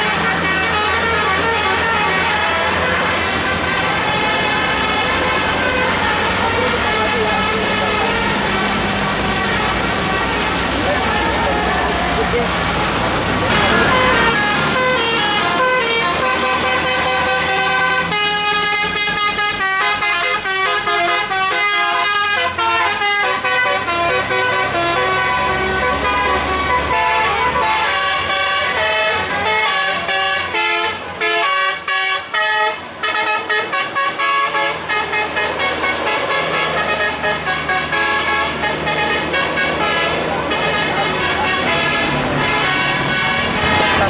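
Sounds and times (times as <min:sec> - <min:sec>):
low engine hum: 0:00.0 - 0:20.6
musical air horn tune: 0:00.0 - 0:44.0.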